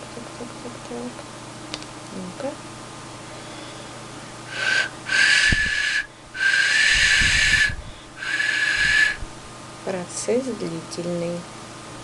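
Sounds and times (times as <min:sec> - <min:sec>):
clay whistle blown: 0:04.5 - 0:09.2.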